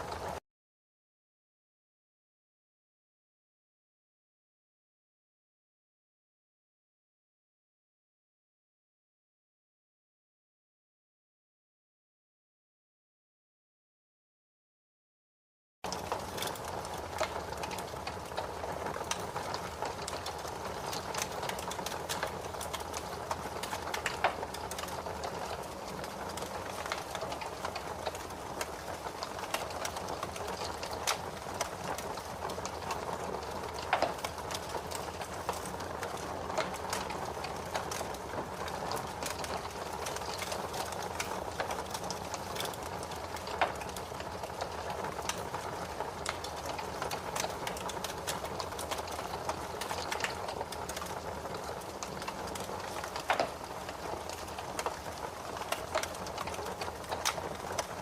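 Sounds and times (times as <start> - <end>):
fire crackling: 0.0 - 0.4, 15.9 - 58.0
loud fire pops: 15.9 - 58.0.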